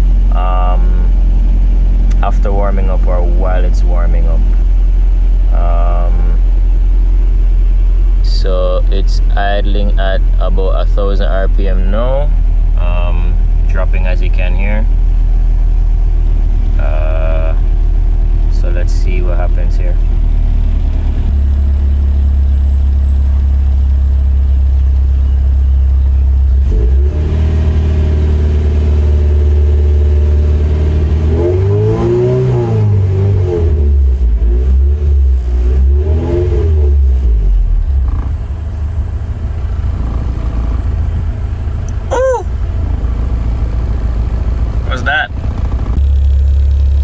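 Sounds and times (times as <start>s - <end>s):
car engine idling and revving: 0.0s - 47.0s.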